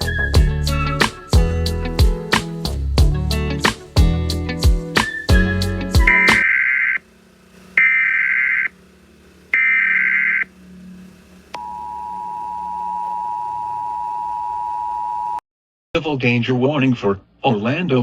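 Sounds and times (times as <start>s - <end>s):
warbling data bursts: 7.8s - 8.8s, 9.5s - 10.9s.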